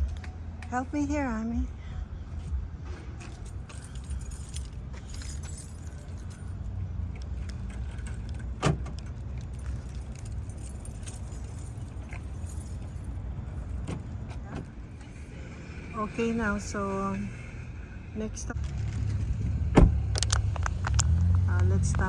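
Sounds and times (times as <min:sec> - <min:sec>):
shopping items clinking and rattling: 0:03.0 - 0:06.6, 0:07.6 - 0:13.8.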